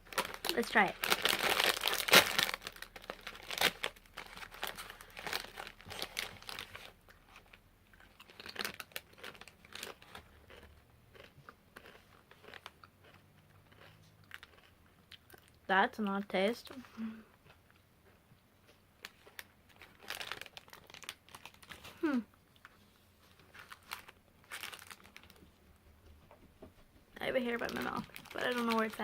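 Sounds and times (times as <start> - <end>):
chip bag crinkling: 0.0 - 15.6, 19.0 - 25.5, 27.4 - 29.0
chips crunching: 0.1 - 15.6, 19.0 - 21.8, 23.3 - 25.4, 27.6 - 29.0.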